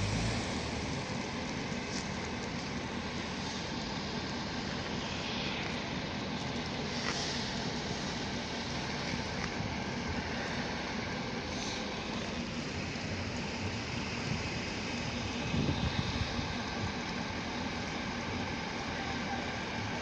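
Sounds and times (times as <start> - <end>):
low rumble: 0.0 - 17.3
snowstorm wind: 0.0 - 20.0
wind buffeting microphone thumps: 15.3 - 17.0.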